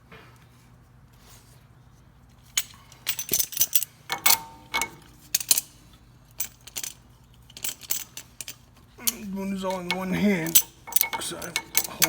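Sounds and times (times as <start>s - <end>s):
metal hand tools clinking: 2.6s - 12.0s.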